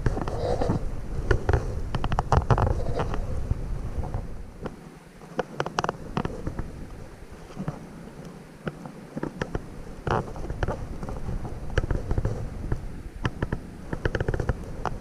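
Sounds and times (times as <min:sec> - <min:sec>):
wind rumble on microphone: 0:00.0 - 0:15.0
kayak paddle knocks and clicks: 0:08.6 - 0:15.0.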